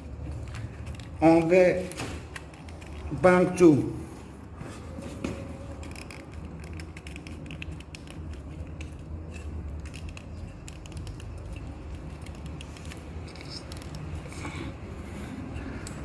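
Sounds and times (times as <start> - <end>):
steady low hum: 0.0 - 16.0
metallic clicks and rattles: 5.8 - 14.3.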